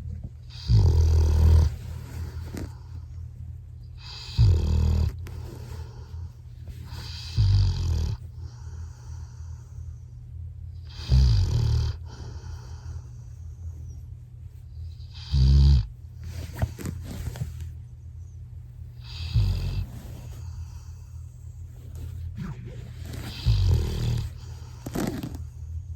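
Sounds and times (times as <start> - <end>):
dog snoring: 0.4 - 3.0, 4.0 - 6.2, 6.8 - 9.7, 10.8 - 13.1, 15.0 - 17.6, 19.0 - 21.3, 21.9 - 25.6.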